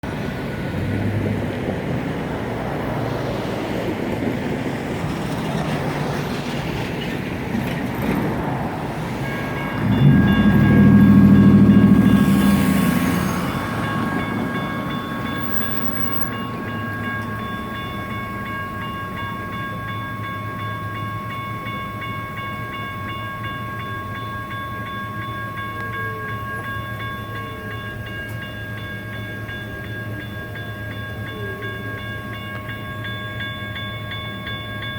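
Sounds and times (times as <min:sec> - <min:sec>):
train rumble: 0:00.0 - 0:34.9
crossing bell ringing: 0:04.8 - 0:34.9
train horn: 0:09.4 - 0:14.0.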